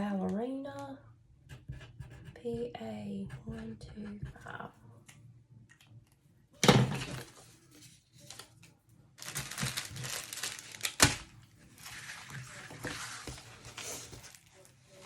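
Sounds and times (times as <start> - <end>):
packaging crinkling: 9.2 - 14.8.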